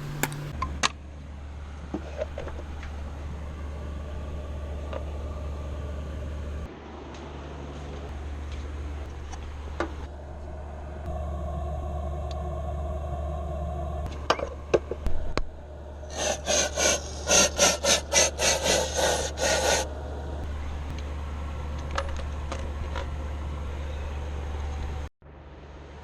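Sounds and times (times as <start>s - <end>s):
steady low hum: 0.0s - 1.9s, 2.6s - 26.0s
hand scraping strokes: 16.1s - 19.9s.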